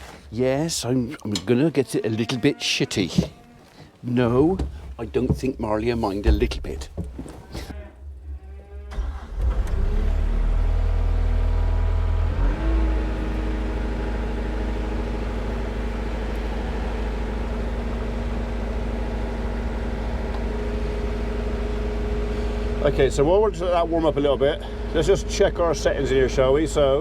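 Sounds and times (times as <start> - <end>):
diesel engine starting and idling: 7.6 - 27.0.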